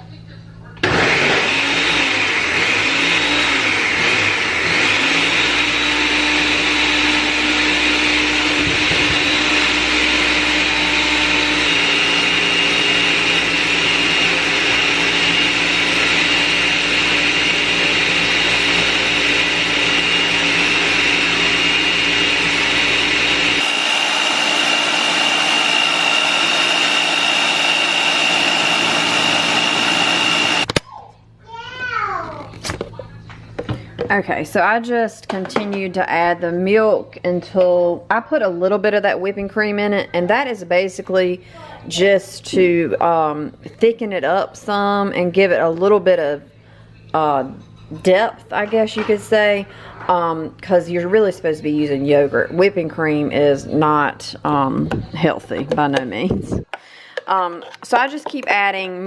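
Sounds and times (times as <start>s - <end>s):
blender motor whine: 0.8s - 30.8s.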